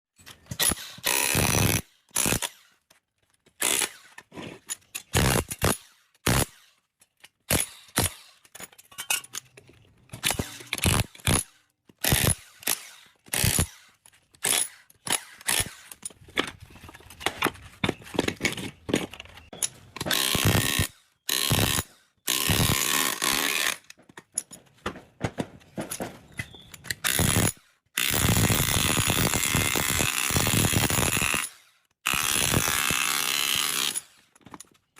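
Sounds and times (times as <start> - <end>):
steady tool noise: 0.3 - 8.5, 10.1 - 24.1
tools clanking on metal: 8.4 - 11.3, 15.9 - 20.2, 23.8 - 27.1.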